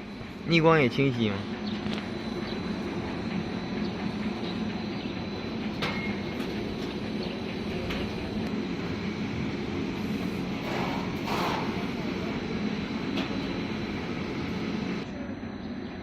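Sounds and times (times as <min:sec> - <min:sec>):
roll-forming machine rumble: 0:00.0 - 0:15.1
faint steady whine: 0:00.0 - 0:16.0.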